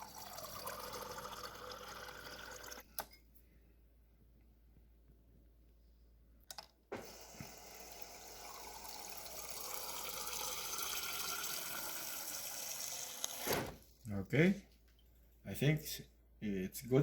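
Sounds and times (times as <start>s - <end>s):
water running: 0.0s - 2.8s, 7.0s - 13.8s.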